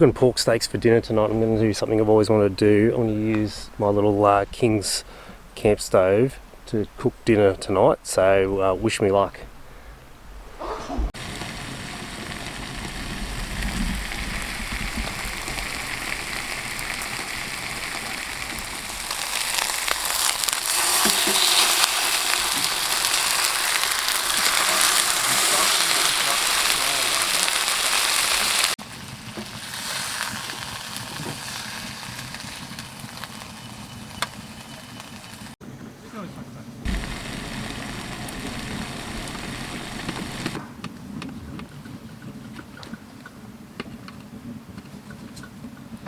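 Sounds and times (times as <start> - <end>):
meat sizzling in a frying pan: 11.2 - 35.6, 36.9 - 40.6.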